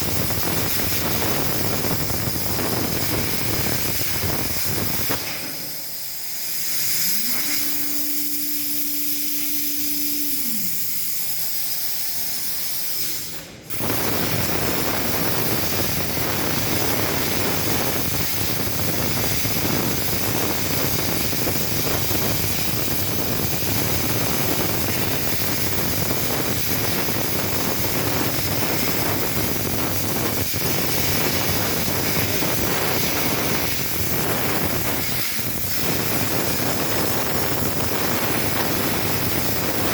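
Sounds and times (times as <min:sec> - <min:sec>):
plasma torch hissing: 0:00.0 - 0:39.9
motor whine: 0:06.9 - 0:11.4.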